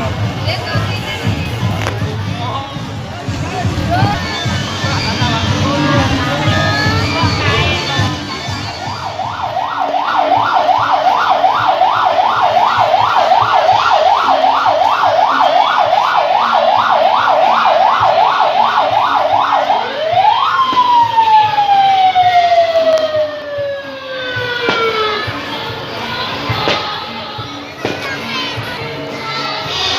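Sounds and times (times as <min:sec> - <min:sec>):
electronic siren yelping: 0:04.0 - 0:25.5.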